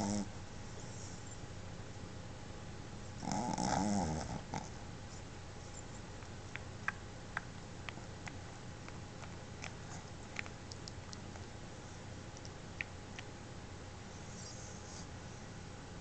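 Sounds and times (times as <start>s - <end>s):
dog snoring: 0.0s - 0.3s, 3.2s - 4.8s.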